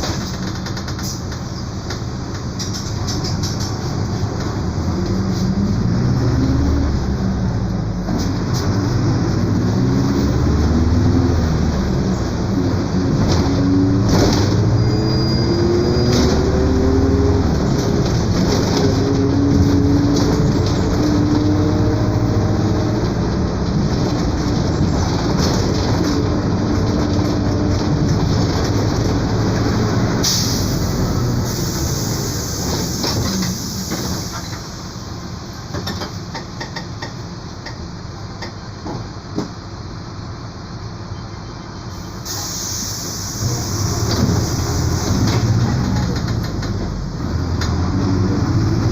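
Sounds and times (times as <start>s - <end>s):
bus differential whining: 0.0s - 48.9s
bus engine drone: 0.0s - 48.9s
hiss: 30.2s - 34.9s, 42.0s - 45.2s.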